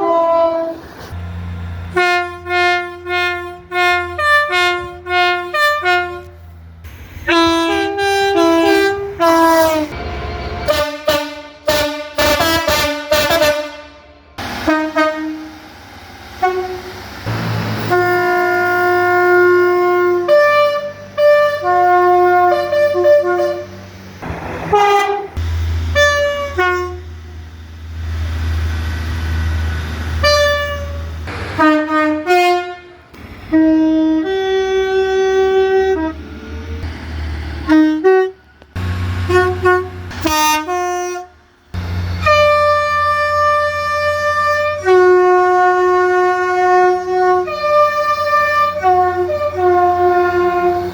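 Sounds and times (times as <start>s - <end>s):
train horns two-tone: 0.0s - 1.0s, 1.9s - 6.4s, 7.2s - 15.5s, 16.4s - 27.4s, 30.1s - 36.3s, 37.6s - 50.9s
low rumble: 23.9s - 26.3s.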